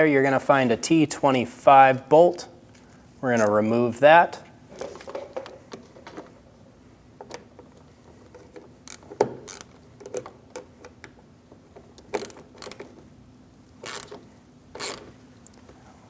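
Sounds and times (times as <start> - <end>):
hand ratchet rasping: 13.8 - 14.2, 14.8 - 15.1.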